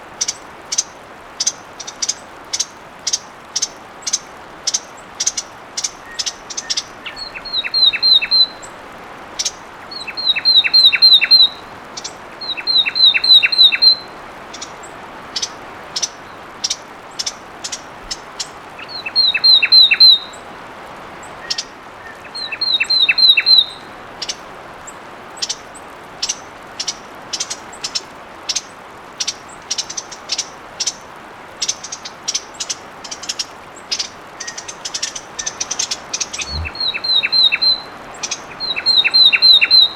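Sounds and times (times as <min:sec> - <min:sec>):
wren singing: 0:00.2 - 0:08.7, 0:09.4 - 0:20.4, 0:21.4 - 0:24.4, 0:31.6 - 0:39.9.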